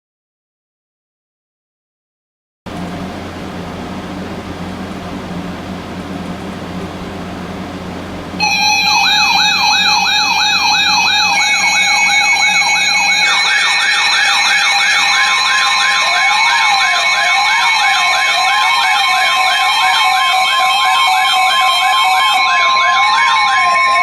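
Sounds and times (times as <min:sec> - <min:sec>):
steady alert tone: 0:08.4 - 0:24.0
wailing siren: 0:08.4 - 0:24.0
yelping electronic siren: 0:08.4 - 0:24.0.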